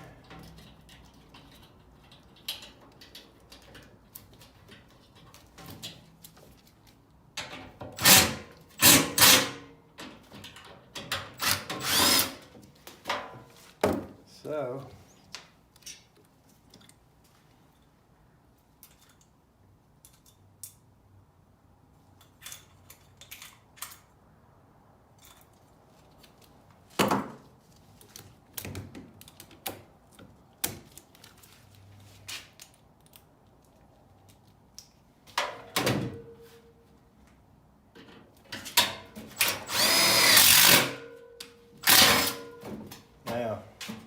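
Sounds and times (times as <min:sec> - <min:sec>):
tools clicking and knocking: 0:00.2 - 0:12.3, 0:18.7 - 0:20.9, 0:22.0 - 0:24.2.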